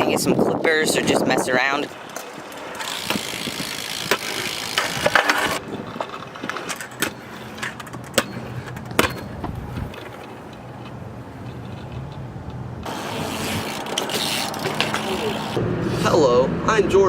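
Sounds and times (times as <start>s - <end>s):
wheels rolling over concrete: 0.0s - 16.2s
sharp impact clacks: 2.0s - 12.9s.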